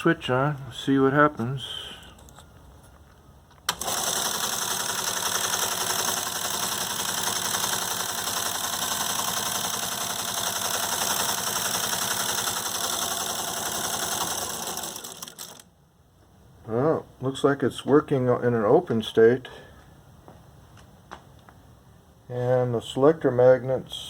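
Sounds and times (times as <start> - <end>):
printer motor and mechanism running: 3.7 - 15.7.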